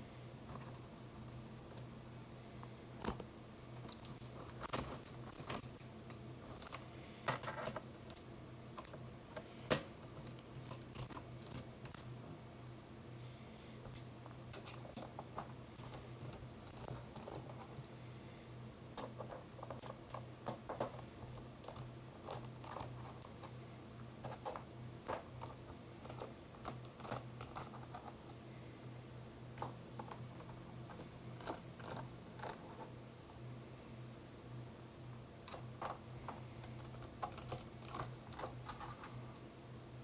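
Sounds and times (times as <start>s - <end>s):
steady low hum: 0.0s - 40.0s
keyboard clicks and plastic rattles: 6.5s - 12.1s, 14.0s - 17.9s, 19.0s - 23.6s, 24.2s - 28.4s, 29.6s - 32.9s, 35.4s - 39.2s.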